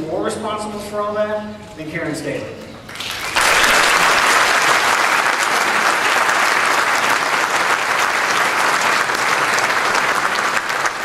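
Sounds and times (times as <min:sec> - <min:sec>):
large audience applauding: 0:02.9 - 0:11.0.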